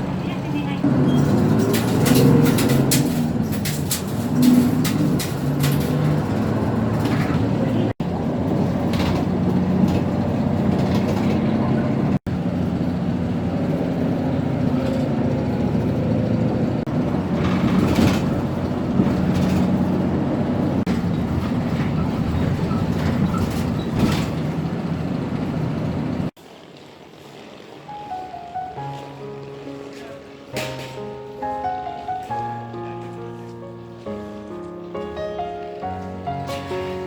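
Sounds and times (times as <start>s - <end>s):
vehicle engine hum with rumble: 0.0s - 28.0s.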